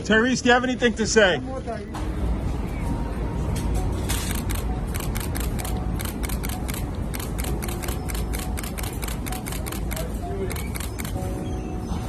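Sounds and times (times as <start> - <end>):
low street rumble: 0.0 - 12.0
camera shutters clicking rapidly: 4.1 - 11.2.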